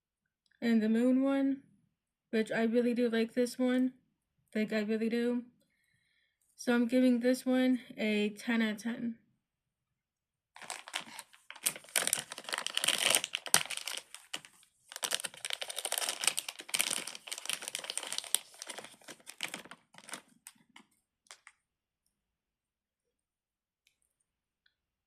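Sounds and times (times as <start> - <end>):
plastic items crinkling and clicking: 10.6 - 21.6.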